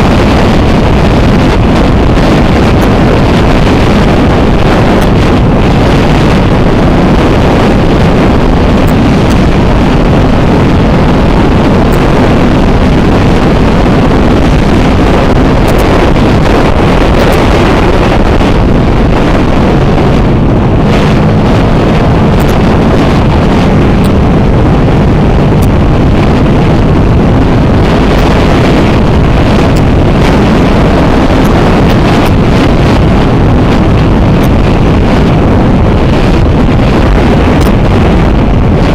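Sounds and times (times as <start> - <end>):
wind buffeting microphone: 0.0 - 38.9.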